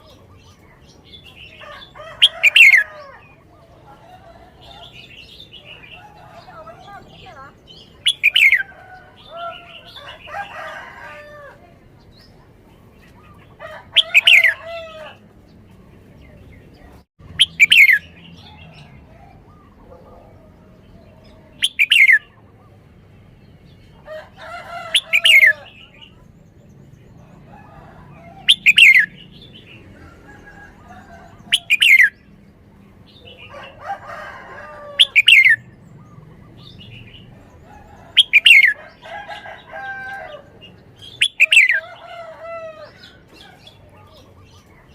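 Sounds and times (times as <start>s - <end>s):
soft bird chattering: 3.5s - 10.3s, 17.4s - 18.8s, 19.4s - 22.5s, 31.4s - 32.2s, 38.1s - 38.8s, 40.7s - 42.0s.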